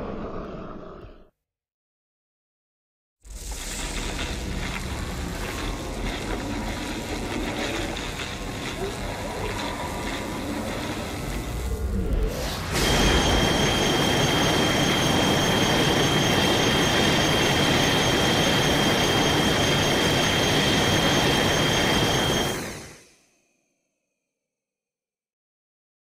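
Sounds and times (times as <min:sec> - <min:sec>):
harsh rush of noise: 0:03.3 - 0:22.7
high-pitched squeal: 0:03.3 - 0:23.2.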